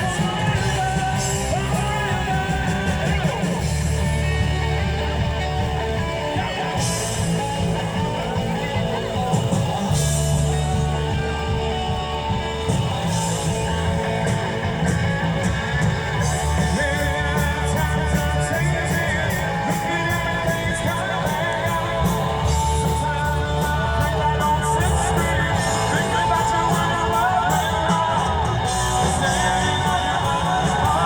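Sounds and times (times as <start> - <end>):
person singing: 0.0 - 4.4, 15.4 - 31.0
electric guitar: 0.0 - 31.0
rock band playing live: 0.0 - 31.0.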